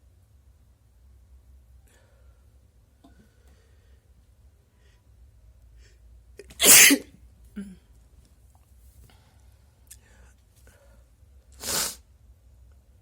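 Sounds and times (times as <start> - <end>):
person sneezing: 6.4 - 7.0, 11.6 - 12.0.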